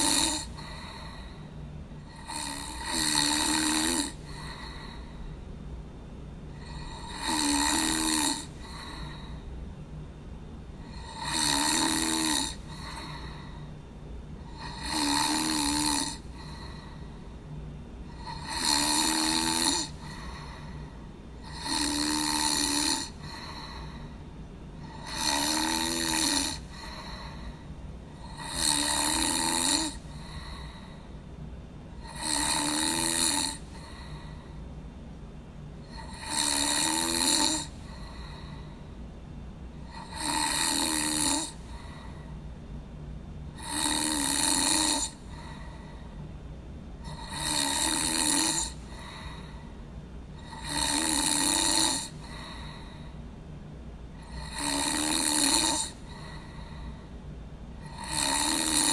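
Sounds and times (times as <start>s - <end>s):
person snoring: 0.0s - 5.3s, 6.6s - 9.5s, 10.8s - 13.7s, 14.4s - 17.2s, 18.1s - 24.2s, 24.8s - 31.1s, 32.0s - 34.5s, 35.8s - 38.8s, 39.8s - 42.3s, 43.6s - 46.1s, 47.0s - 49.6s, 50.4s - 53.2s, 54.2s - 57.0s, 57.8s - 58.9s
faint low hum: 0.0s - 58.9s.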